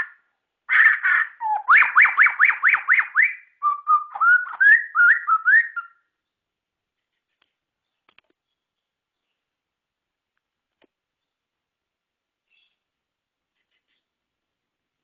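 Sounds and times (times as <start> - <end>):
bird singing: 0.0 - 6.5, 7.8 - 9.6, 12.4 - 12.9.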